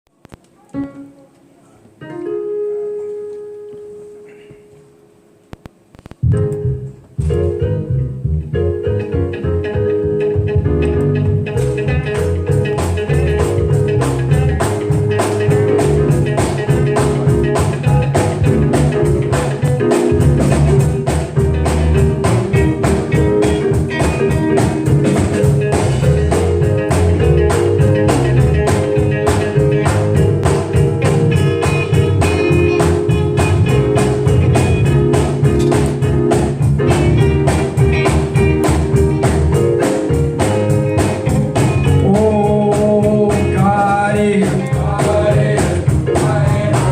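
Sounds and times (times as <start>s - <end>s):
guitar: 0.1s - 46.9s
bass line: 6.0s - 46.9s
drum beat: 11.5s - 46.9s.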